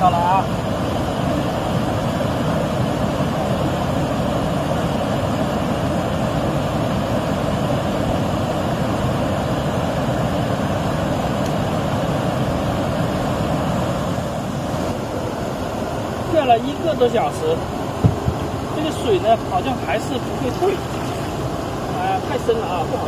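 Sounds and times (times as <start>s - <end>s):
stream rushing: 0.0s - 23.0s.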